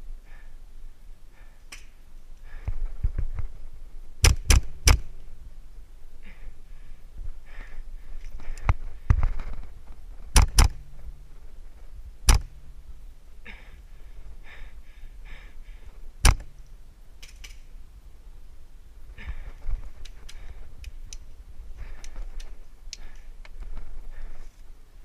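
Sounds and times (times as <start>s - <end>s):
airsoft gunshots: 4.2s - 5.1s, 10.4s - 10.8s, 12.3s - 12.5s, 16.2s - 16.6s
gear rustling and rattling: 8.1s - 12.1s.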